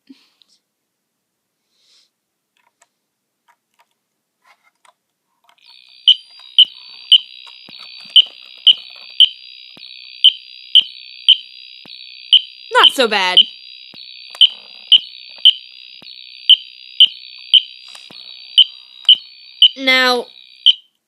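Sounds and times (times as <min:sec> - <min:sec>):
fire alarm horn buzzing: 0:05.7 - 0:20.9
sharp loud alarm beeps: 0:05.8 - 0:20.9.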